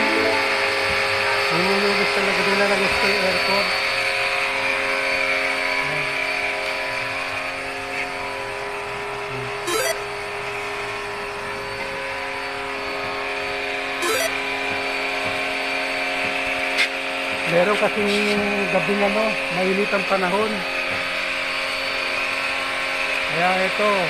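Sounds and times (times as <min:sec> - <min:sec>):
small electric motor whining: 0:00.0 - 0:24.0
short chirps: 0:14.0 - 0:14.3.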